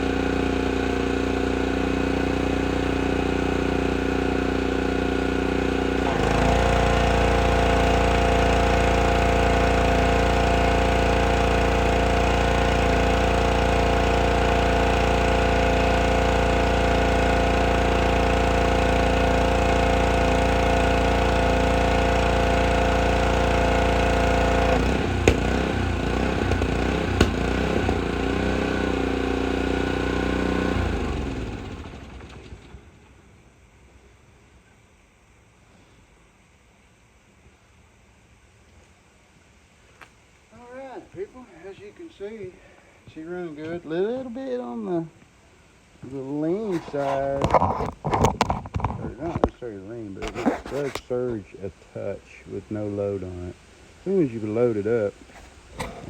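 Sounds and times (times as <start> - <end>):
pressure washer engine running: 0.0 - 33.2, 55.8 - 56.0.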